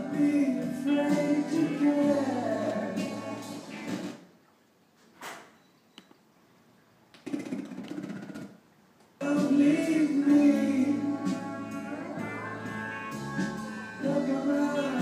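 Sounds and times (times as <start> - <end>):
recorded music with singing: 0.0 - 4.2, 9.2 - 15.0.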